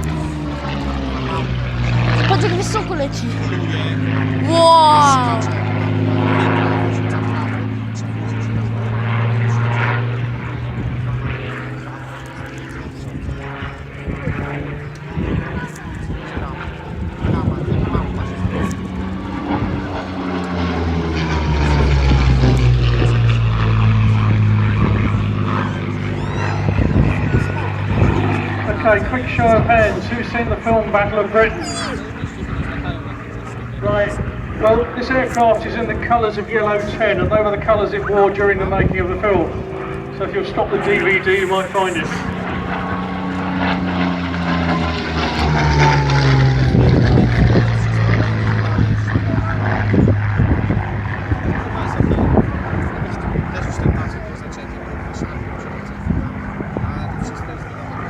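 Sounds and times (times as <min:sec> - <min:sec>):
propeller aircraft engine flying past: 0:00.0 - 0:58.0.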